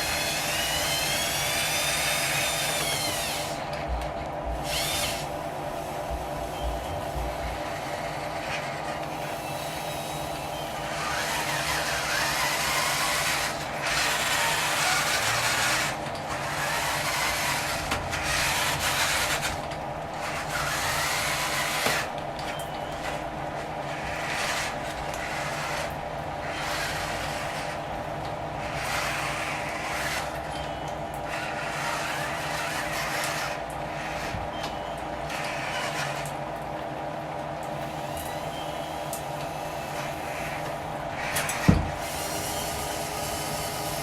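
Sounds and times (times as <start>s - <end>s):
small electric motors whining: 0.0s - 36.4s, 37.8s - 44.0s
rasping and grinding: 10.8s - 22.2s, 22.9s - 30.5s, 31.2s - 34.5s.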